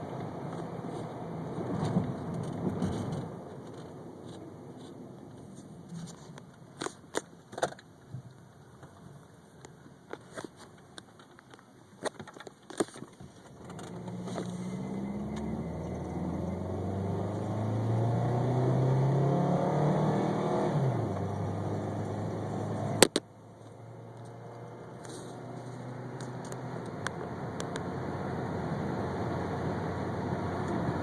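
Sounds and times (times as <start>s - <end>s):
misfiring car engine revving: 13.6s - 23.1s.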